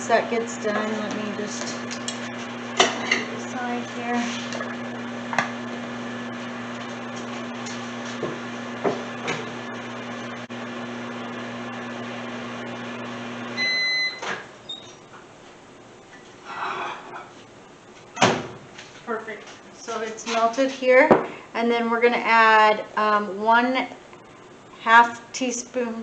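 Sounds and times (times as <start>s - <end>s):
microwave oven humming: 0.0s - 16.1s
microwave beep: 13.3s - 15.0s.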